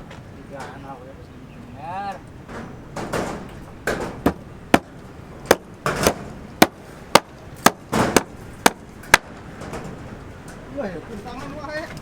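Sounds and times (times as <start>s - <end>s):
sharp hand tool striking: 3.9s - 9.3s.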